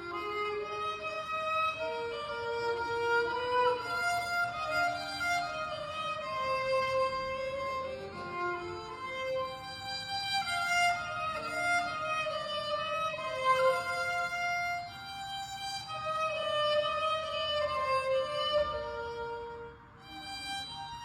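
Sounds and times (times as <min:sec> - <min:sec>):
violin slow melody: 0:00.0 - 0:21.0.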